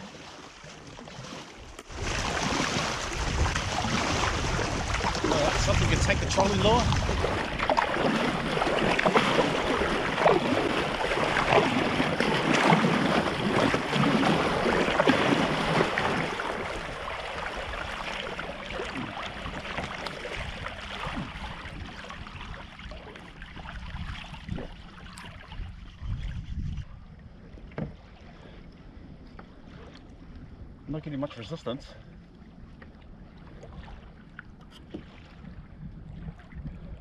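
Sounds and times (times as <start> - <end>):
water splashing around kayak: 0.0 - 37.0
wind on microphone: 1.6 - 28.1, 34.8 - 37.0.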